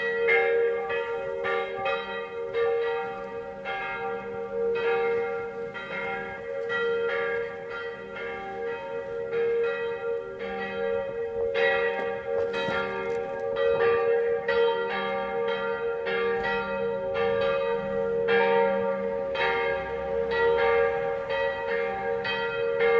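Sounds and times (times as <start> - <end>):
church bells ringing: 0.0 - 22.9.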